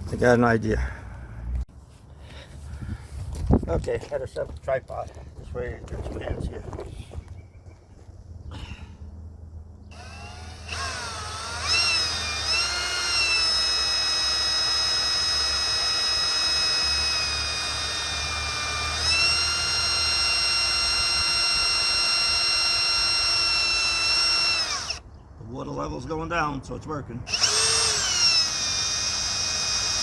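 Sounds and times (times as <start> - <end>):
cordless drill whining: 9.9 - 25.0, 27.3 - 30.0.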